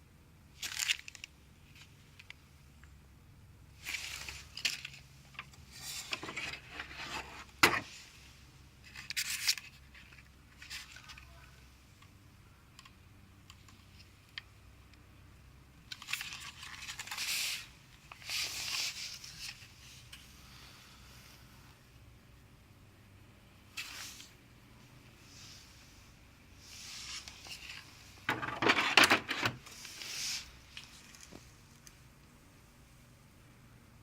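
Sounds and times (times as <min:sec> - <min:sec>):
packaging rustling and scraping: 0:03.8 - 0:08.2, 0:08.8 - 0:11.3, 0:15.9 - 0:20.0.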